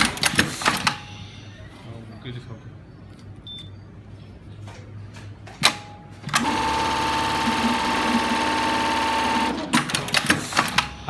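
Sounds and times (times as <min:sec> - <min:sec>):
sewing machine stitching: 0:06.3 - 0:10.8.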